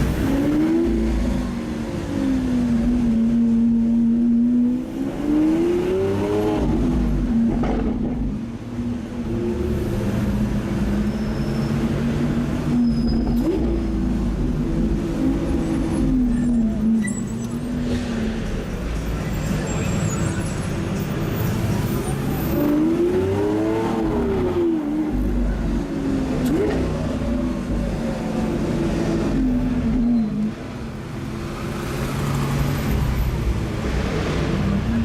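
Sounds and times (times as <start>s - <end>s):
car engines running: 0.0s - 35.0s.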